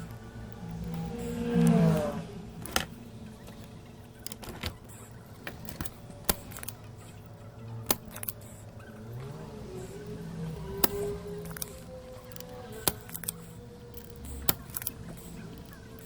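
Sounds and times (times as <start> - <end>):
metal hand tools clicking: 7.8 - 8.6.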